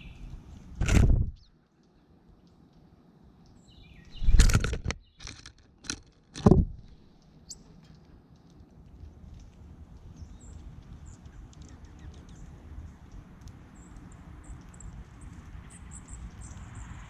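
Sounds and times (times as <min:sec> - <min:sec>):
songbirds chirping: 0:00.0 - 0:00.7, 0:01.3 - 0:17.0.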